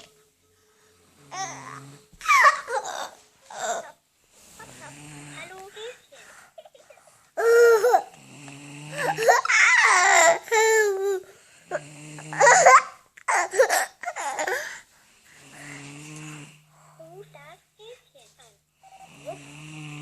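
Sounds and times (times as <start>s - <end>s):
low steady snore: 0.7s - 2.1s, 4.4s - 6.3s, 8.1s - 9.3s, 11.1s - 12.5s, 15.0s - 17.6s, 18.8s - 20.0s
high-pitched babbling and squealing: 1.3s - 4.0s.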